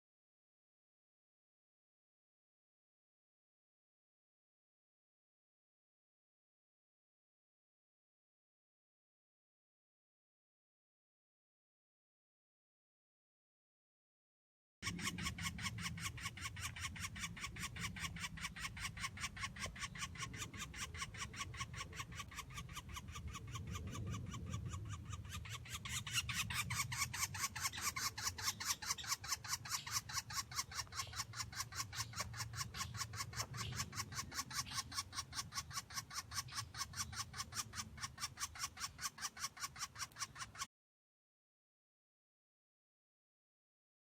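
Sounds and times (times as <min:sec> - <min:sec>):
sparrow chirping: 0:14.8 - 0:40.7.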